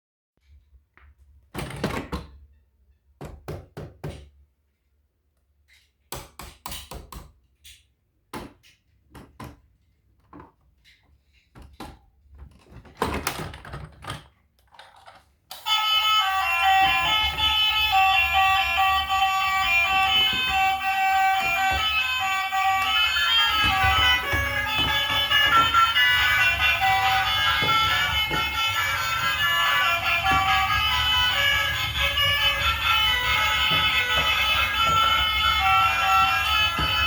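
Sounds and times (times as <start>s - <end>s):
toys and packaging being handled: 8.6s - 37.0s.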